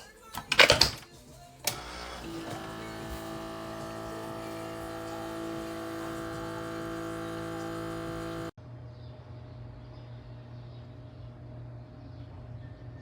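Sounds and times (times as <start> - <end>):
coffee maker humming: 1.6 - 8.6.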